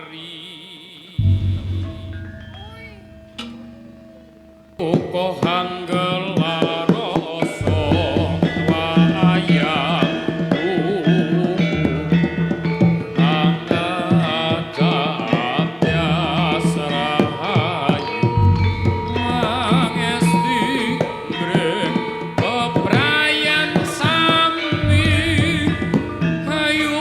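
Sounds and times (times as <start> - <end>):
gamelan music: 1.2 - 27.0
hand drums beating: 1.2 - 27.0.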